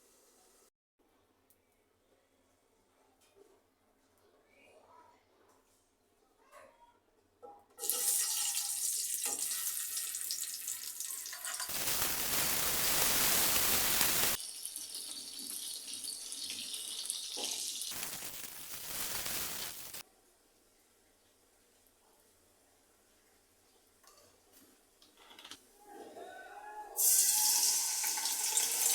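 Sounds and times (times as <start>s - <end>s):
tap water running into sink: 7.8s - 12.1s.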